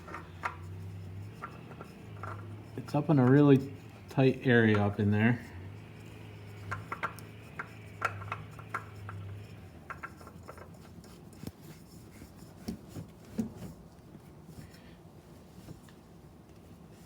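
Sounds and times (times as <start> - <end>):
low steady hum: 0.0 - 17.0
oil filter handling clicks: 6.5 - 10.7.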